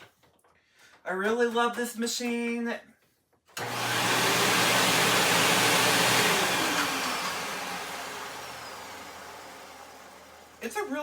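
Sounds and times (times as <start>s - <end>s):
vacuum cleaner motor winding down: 3.6s - 11.0s.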